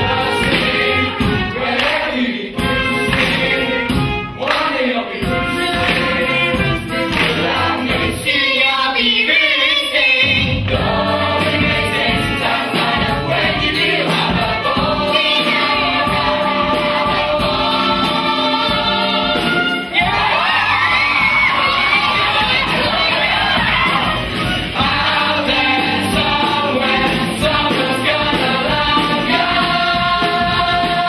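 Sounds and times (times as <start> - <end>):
cast singing as a choir: 0.0 - 31.0
musical accompaniment: 0.0 - 31.0
audience cheering and whooping: 20.0 - 24.6.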